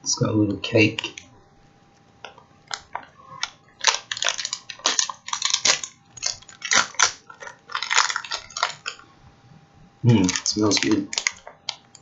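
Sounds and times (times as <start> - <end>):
plastic wrapper crinkling and tearing: 2.7 - 9.0, 10.1 - 12.0.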